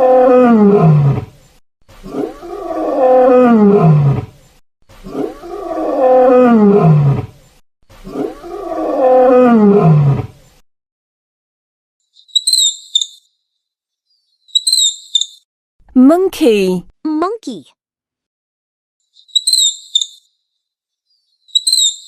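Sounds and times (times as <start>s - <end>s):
lion roaring: 0.0s - 10.4s.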